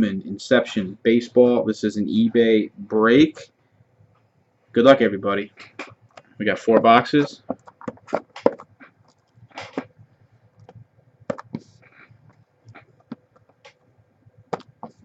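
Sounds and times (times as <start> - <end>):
trading card boxes tapping and clicking: 5.7 - 10.0, 10.6 - 13.9, 14.5 - 15.0.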